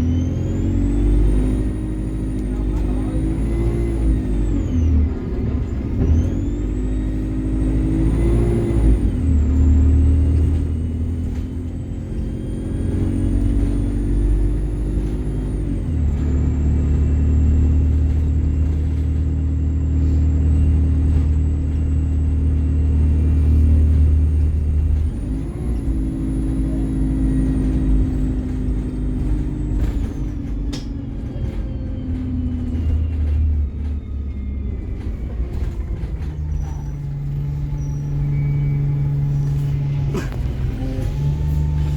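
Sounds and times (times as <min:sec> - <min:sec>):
bus engine drone: 0:00.0 - 0:41.9.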